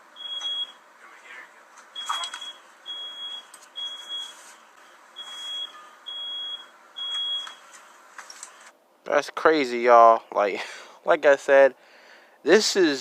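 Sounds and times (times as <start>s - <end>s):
smoke alarm beeping: 0.1s - 0.8s, 2.0s - 4.5s, 5.2s - 7.7s.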